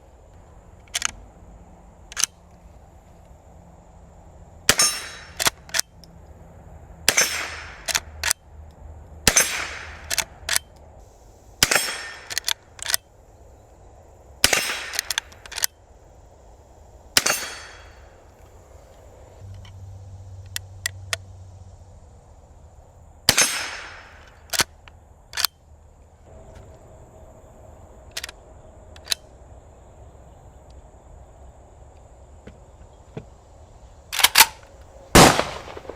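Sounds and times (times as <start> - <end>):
rifle lever metallic clicks: 0.8 - 1.2, 2.1 - 2.4, 4.7 - 6.1, 7.2 - 8.4, 9.3 - 10.8, 11.6 - 13.0, 14.5 - 15.8, 23.4 - 25.6, 28.1 - 29.3, 34.1 - 35.9
rifle shots with echo: 4.7 - 5.5, 7.1 - 8.1, 9.3 - 10.4, 11.6 - 12.6, 14.4 - 15.4, 17.2 - 18.1, 23.3 - 24.3, 35.2 - 35.9.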